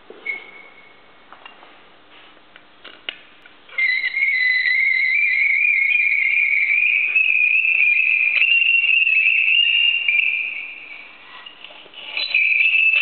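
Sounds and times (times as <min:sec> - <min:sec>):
high-pitched whistling tone: 0:00.2 - 0:01.1, 0:03.7 - 0:13.0.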